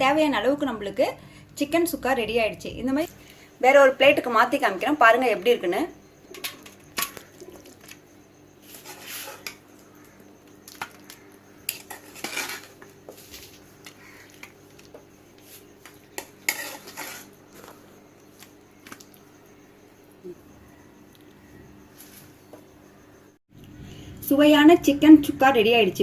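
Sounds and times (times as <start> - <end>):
spoon scraping and clinking on pan: 11.7 - 12.8, 16.2 - 17.4.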